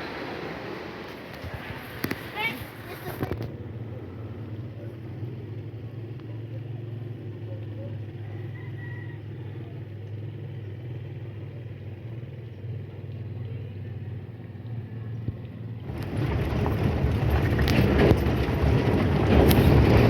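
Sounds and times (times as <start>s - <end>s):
loud rough rushing noise: 0.0s - 3.4s, 15.8s - 20.0s
vehicle hum: 0.0s - 20.0s.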